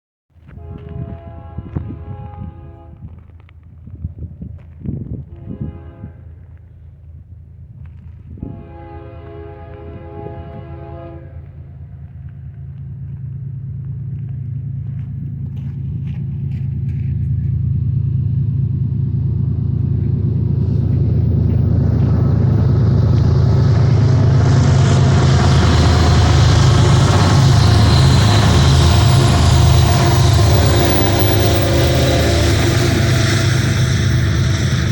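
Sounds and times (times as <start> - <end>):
locomotive air horn chord: 0.6 - 3.1, 5.3 - 6.4, 8.4 - 11.6, 20.6 - 34.9
low diesel rumble: 0.6 - 34.9.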